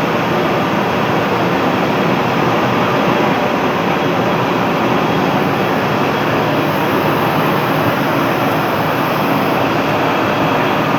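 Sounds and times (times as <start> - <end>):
slitting machine running: 5.3 - 9.8.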